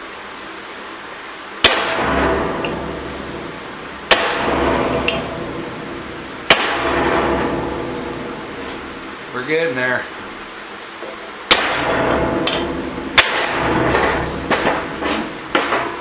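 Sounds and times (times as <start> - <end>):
hammer striking metal punch: 1.6 - 9.1, 11.5 - 16.0.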